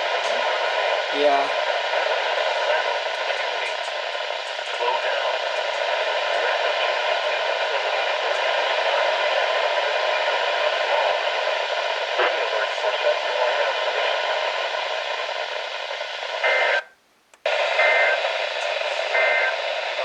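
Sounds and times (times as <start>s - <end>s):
faint broadcast voice: 0.0s - 16.9s, 17.5s - 20.0s
radio static hiss: 0.0s - 20.0s.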